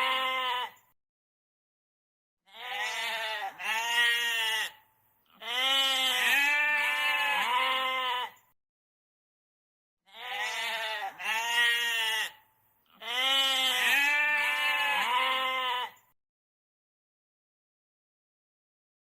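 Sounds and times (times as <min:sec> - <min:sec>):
goat bleating: 0:00.0 - 0:00.8, 0:02.5 - 0:08.4, 0:10.1 - 0:16.0.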